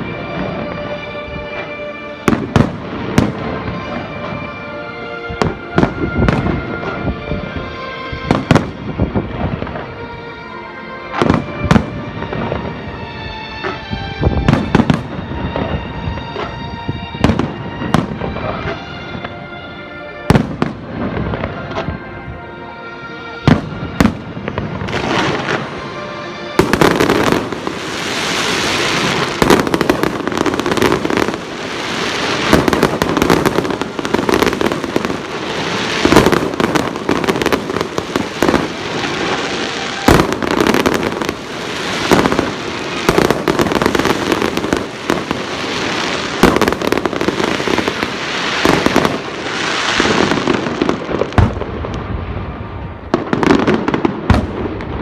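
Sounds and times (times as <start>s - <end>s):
fireworks crackling barrage: 0.0s - 55.0s
music playing: 0.0s - 55.0s
fireworks booming: 1.6s - 4.4s, 13.6s - 16.6s, 23.5s - 26.0s, 26.6s - 55.0s.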